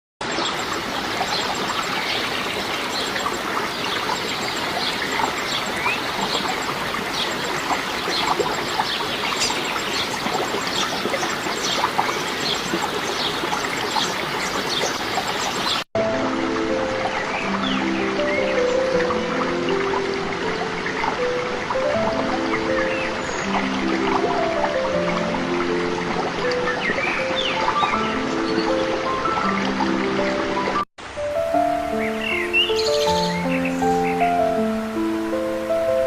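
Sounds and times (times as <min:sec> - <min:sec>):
stream water running: 0:00.2 - 0:36.0
music: 0:16.0 - 0:36.0.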